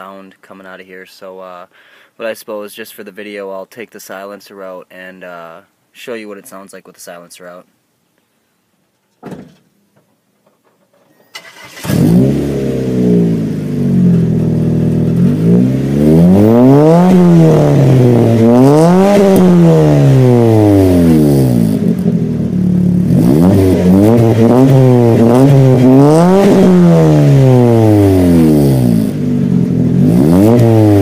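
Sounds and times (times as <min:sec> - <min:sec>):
car engine idling and revving: 0:11.4 - 0:31.0.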